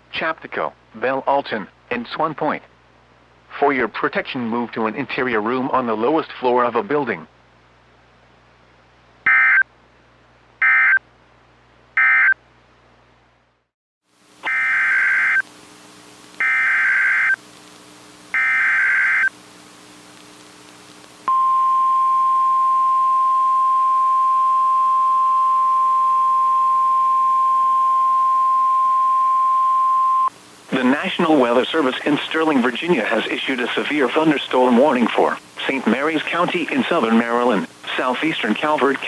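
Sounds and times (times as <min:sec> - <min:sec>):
alert data bursts: 0:14.4 - 0:15.4, 0:16.4 - 0:17.4, 0:18.3 - 0:19.3
steady warning alarm tone: 0:14.5 - 0:15.4, 0:16.4 - 0:17.4, 0:18.4 - 0:19.3.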